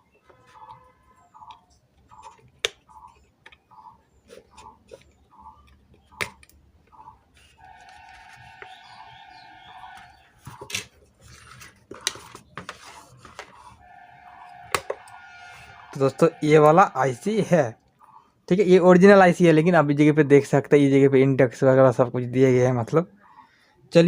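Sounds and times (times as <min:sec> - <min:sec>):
steady pitched whine: 0:07.6 - 0:10.6, 0:13.4 - 0:18.1.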